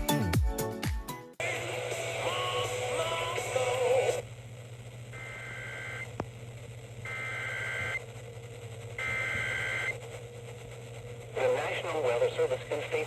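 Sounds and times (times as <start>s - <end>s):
two-tone digital data screech: 7.1s - 8.0s, 9.0s - 10.0s.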